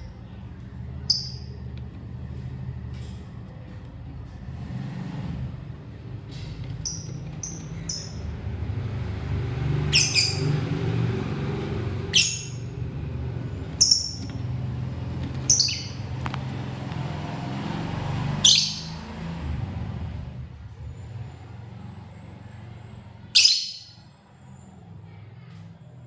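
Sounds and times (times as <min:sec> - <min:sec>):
lovebird shrill chirps: 0:01.1 - 0:01.6, 0:06.8 - 0:08.2, 0:09.9 - 0:10.6, 0:12.1 - 0:12.7, 0:13.8 - 0:14.3, 0:15.5 - 0:16.1, 0:18.4 - 0:19.0, 0:23.3 - 0:24.1.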